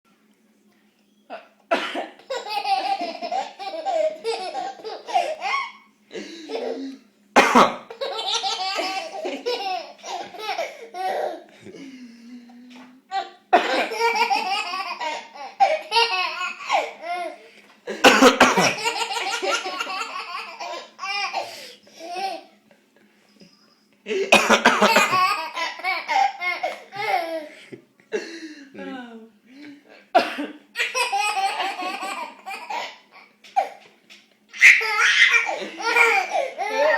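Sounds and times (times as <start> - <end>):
coughing: 1.3 - 8.1, 13.1 - 16.0, 16.6 - 21.4, 24.1 - 27.5, 29.9 - 36.9
baby laughing: 2.2 - 6.9, 7.9 - 11.5, 13.1 - 17.4, 18.6 - 22.5, 24.6 - 27.6, 30.8 - 36.9.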